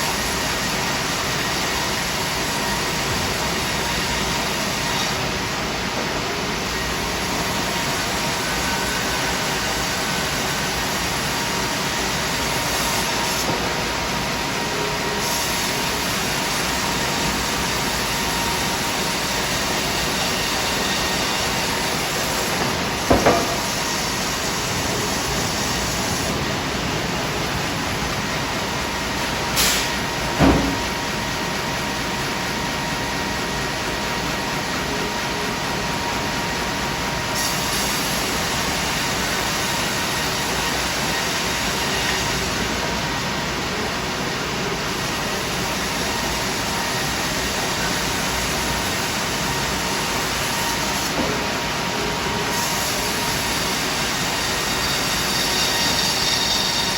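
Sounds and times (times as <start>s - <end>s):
band sawmill running: 0.0s - 56.9s
sharp knock: 23.1s - 23.7s, 30.4s - 30.9s.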